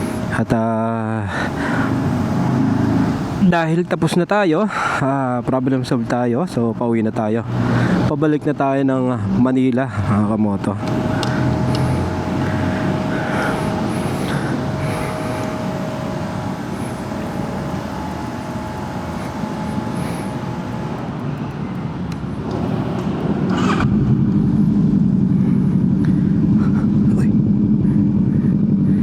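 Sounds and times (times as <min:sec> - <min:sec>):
vehicle engine: 0:00.0 - 0:00.6, 0:01.3 - 0:03.5, 0:07.5 - 0:08.1, 0:10.6 - 0:28.1
road noise: 0:00.0 - 0:04.0, 0:07.2 - 0:08.3, 0:10.0 - 0:26.2.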